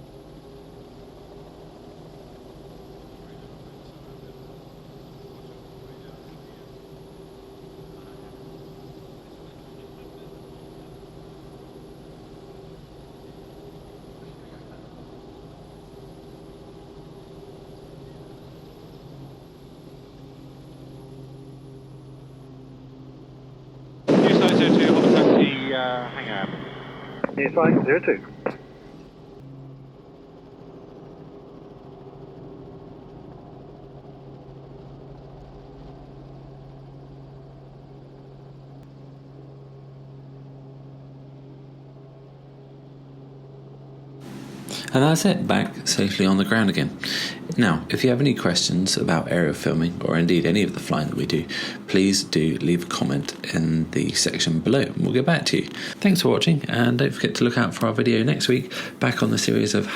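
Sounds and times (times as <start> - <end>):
helicopter engine and rotors running: 0.0 - 28.8
helicopter engine and rotors: 0.0 - 59.9.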